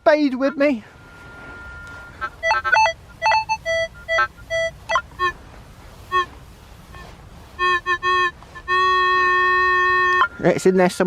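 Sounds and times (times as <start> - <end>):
bouncy tune of short notes: 0.4 - 5.4, 6.0 - 11.0.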